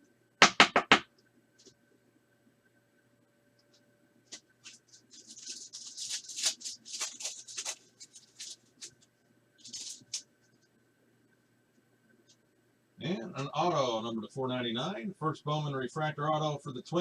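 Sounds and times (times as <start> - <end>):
trading cards rustling: 4.6 - 10.2.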